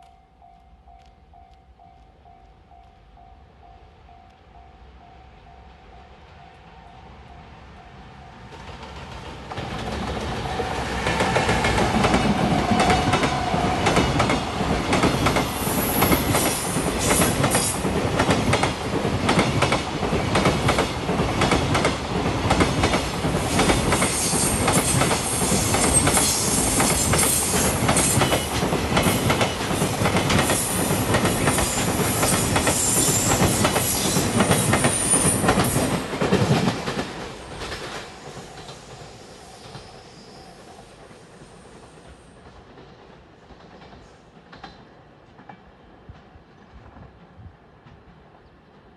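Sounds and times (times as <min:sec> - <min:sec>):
train wheels clicking over rail joints: 0:08.5 - 0:40.1.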